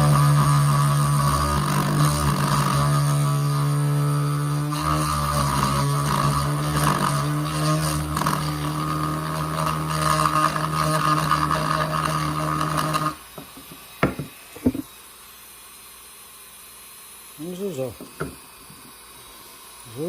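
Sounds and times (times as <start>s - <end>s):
electric power tool humming: 0.0s - 20.0s
sharp knocks on wood: 13.4s - 14.8s.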